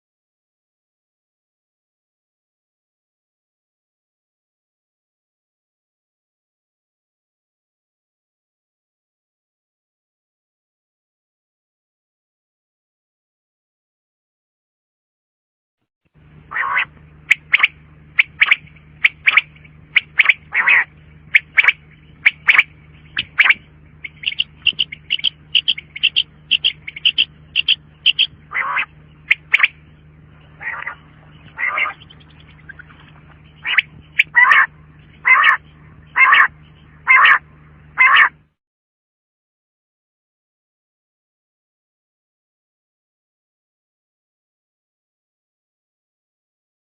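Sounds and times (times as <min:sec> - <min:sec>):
low steady hum: 0:16.2 - 0:38.6
quail calling: 0:16.5 - 0:38.4.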